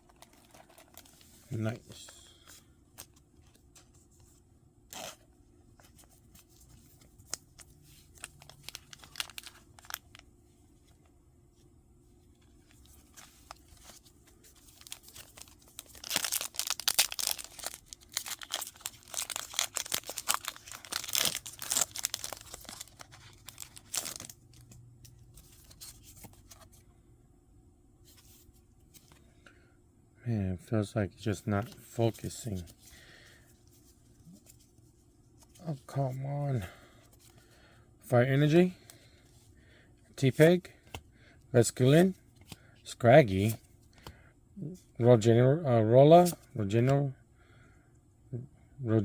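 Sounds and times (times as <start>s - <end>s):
foil wrapper tearing and crinkling: 8.1s - 10.2s, 14.8s - 24.4s.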